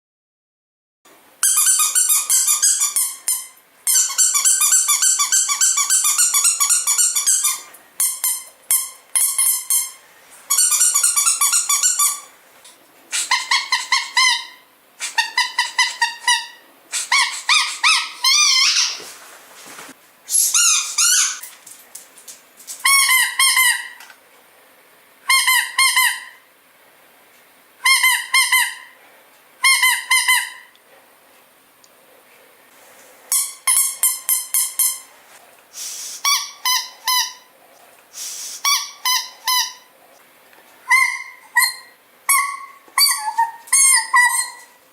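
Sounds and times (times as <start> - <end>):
squeaky toy squeaking: 1.4 - 12.3, 13.1 - 19.0, 20.4 - 21.5, 22.8 - 24.0, 25.3 - 26.4, 27.8 - 29.0, 29.6 - 30.7, 33.3 - 35.1, 36.2 - 37.5, 38.6 - 39.9, 40.9 - 44.8.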